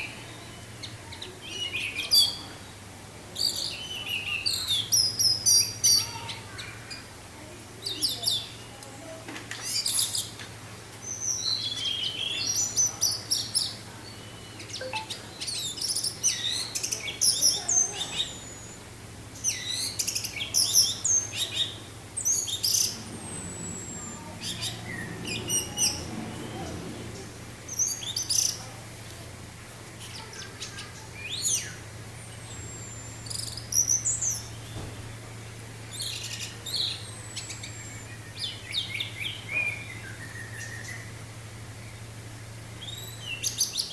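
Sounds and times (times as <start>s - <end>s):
thrush singing: 21.2s - 28.6s
low steady hum: 21.9s - 29.9s.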